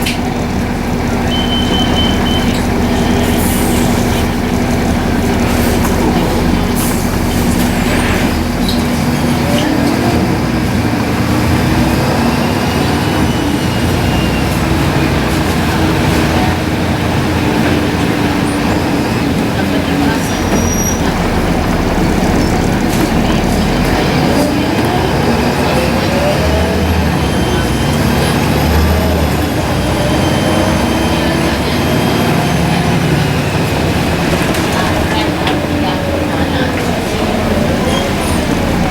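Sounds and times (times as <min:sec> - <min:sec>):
diesel bus engine drone: 0:00.0 - 0:38.9
faint high turbo whistle: 0:01.2 - 0:04.4.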